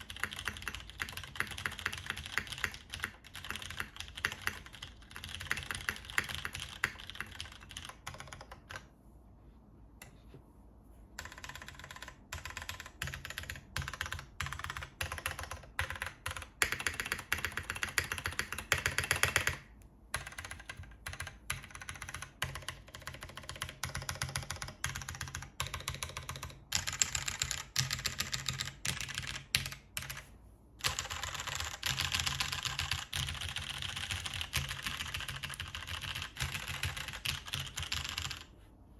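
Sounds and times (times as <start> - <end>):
mechanical keyboard typing: 0.0 - 8.9, 11.2 - 38.5.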